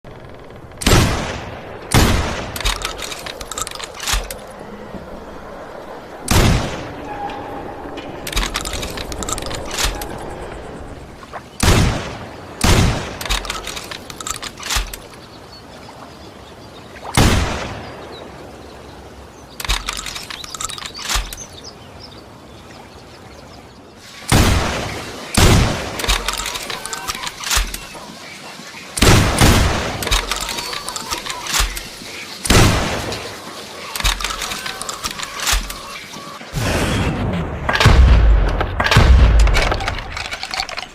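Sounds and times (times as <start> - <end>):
metallic clicks and rattles: 8.2 - 10.2, 39.4 - 40.9.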